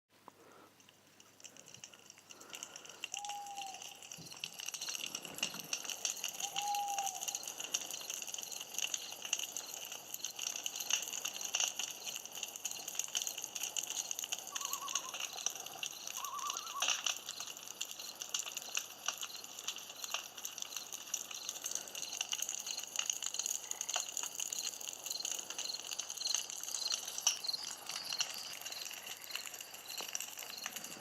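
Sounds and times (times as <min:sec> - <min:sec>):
campfire crackling and popping: 0:00.2 - 0:31.0
short whistle-like calls: 0:03.1 - 0:04.4, 0:06.3 - 0:07.4, 0:14.5 - 0:15.4, 0:16.0 - 0:17.0.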